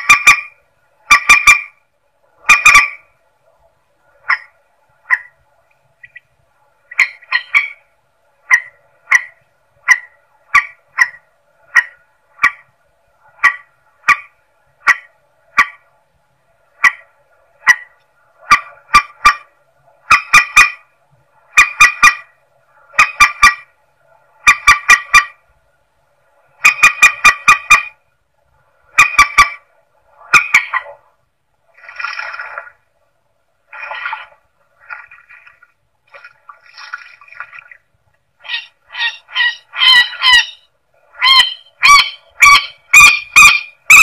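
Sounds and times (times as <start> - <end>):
rail bird clicking calls: 0.0 - 1.8, 6.9 - 7.8, 38.4 - 40.6, 41.2 - 44.0
harsh bird calls: 38.4 - 44.0.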